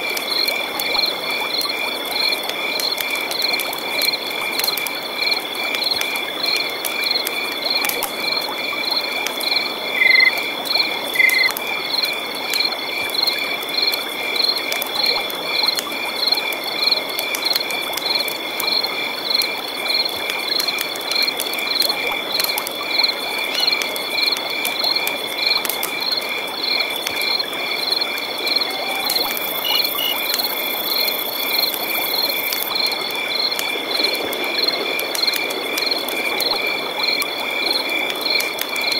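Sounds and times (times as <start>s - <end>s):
frogs trilling: 0.2s - 38.9s
high insect tone: 9.5s - 12.1s, 23.0s - 33.4s.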